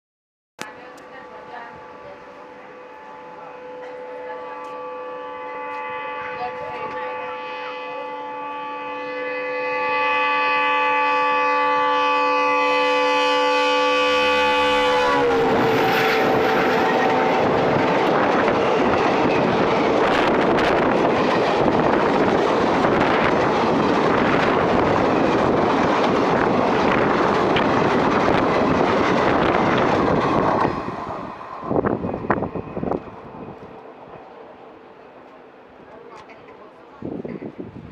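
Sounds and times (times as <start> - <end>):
locomotive horn: 1.2 - 35.3
train coaches clattering past: 13.2 - 37.4.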